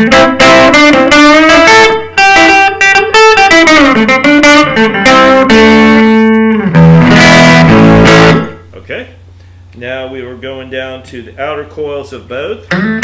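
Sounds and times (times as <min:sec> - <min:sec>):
clean electric guitar picking notes: 0:00.0 - 0:08.7, 0:12.7 - 0:13.0.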